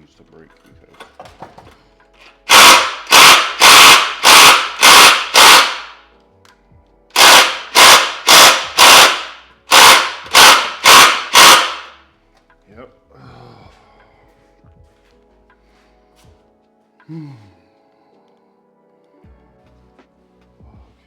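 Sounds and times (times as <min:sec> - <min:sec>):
impact wrench hammering: 0:01.0 - 0:06.0, 0:07.1 - 0:12.0.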